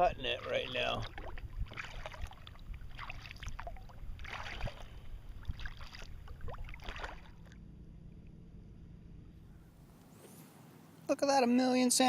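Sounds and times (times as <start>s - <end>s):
paddle splashing in water: 0.0s - 7.6s
low rumble: 0.0s - 9.9s.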